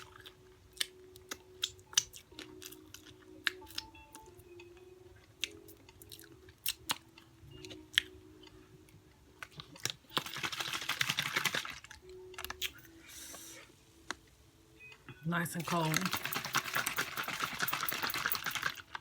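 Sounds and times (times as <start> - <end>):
close chewing: 0.0 - 4.0.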